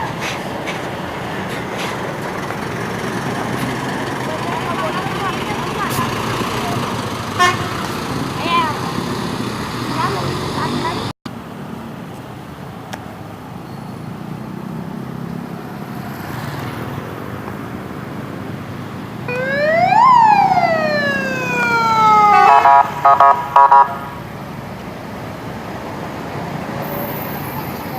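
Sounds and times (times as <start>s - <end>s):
siren-like vehicle horn: 7.4s - 7.8s, 19.3s - 24.3s.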